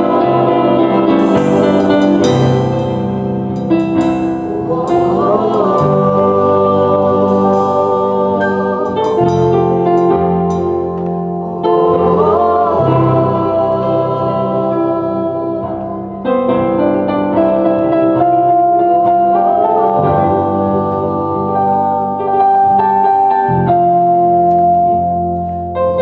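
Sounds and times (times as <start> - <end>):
voices singing: 0.0 - 16.4, 19.2 - 22.8
organ keyboard chords: 0.0 - 26.0.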